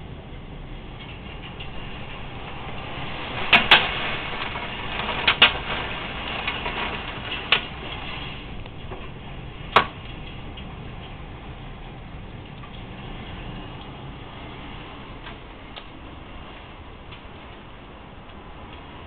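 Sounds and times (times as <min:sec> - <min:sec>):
wind and rain storm: 0:00.0 - 0:19.0.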